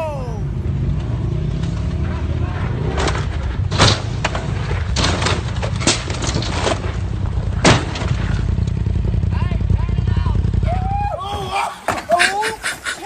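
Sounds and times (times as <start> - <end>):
steady low rumble: 0.2 - 11.2
vehicle knocks and bangs: 0.9 - 9.0, 11.4 - 12.2.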